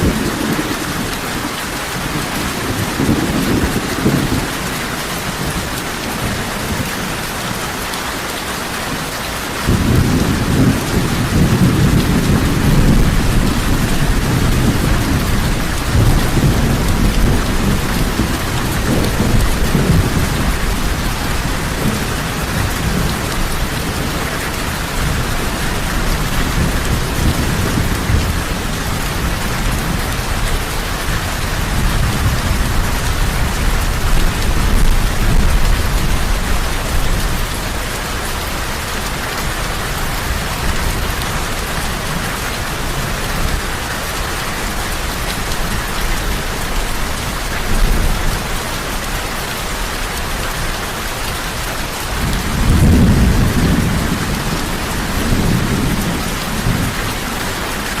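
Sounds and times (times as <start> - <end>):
heavy rain falling: 0.0 - 58.0
low rolling thunder: 9.6 - 37.8, 52.0 - 58.0.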